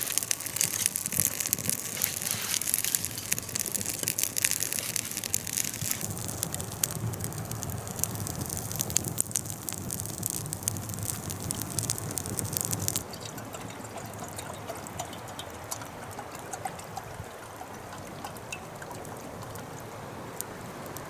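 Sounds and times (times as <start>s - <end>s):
quiet hiss: 0.0s - 21.0s
small crackles: 0.0s - 21.0s
water pouring: 0.0s - 21.0s.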